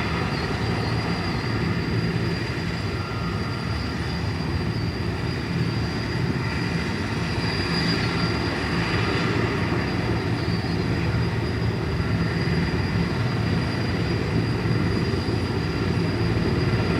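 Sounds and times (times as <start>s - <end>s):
helicopter rotor and engine rumble: 0.0s - 16.9s
high turbine whine: 0.0s - 16.9s.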